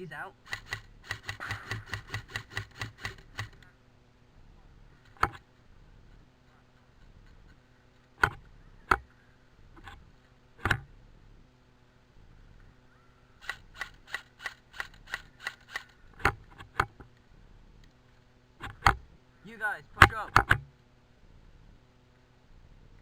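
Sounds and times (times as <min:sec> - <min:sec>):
airsoft guns firing: 0:00.4 - 0:03.6.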